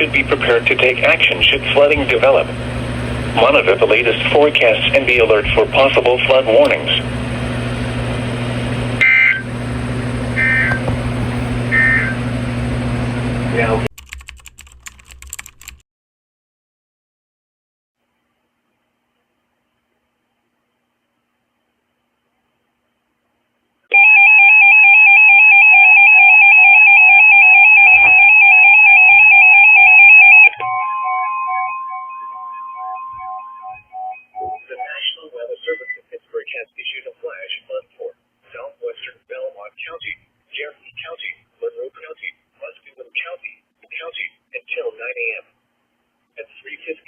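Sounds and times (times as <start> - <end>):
steady hum and hiss: 0.0 - 13.9
data tone bursts: 9.0 - 9.6, 10.4 - 10.9, 11.7 - 12.3, 29.3 - 35.0.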